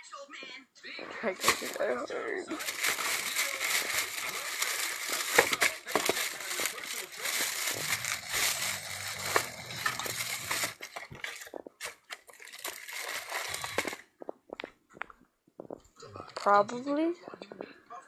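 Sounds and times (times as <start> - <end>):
packaging crinkling and rustling: 1.3 - 14.2.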